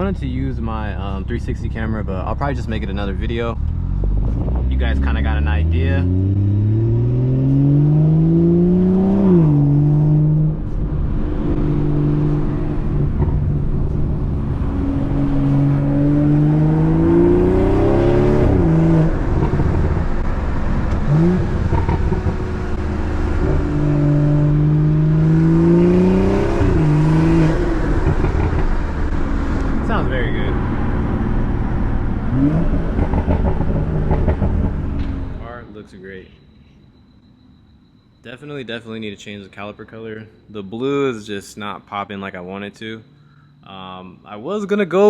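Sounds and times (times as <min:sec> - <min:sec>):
car engine revving: 0:00.0 - 0:35.5.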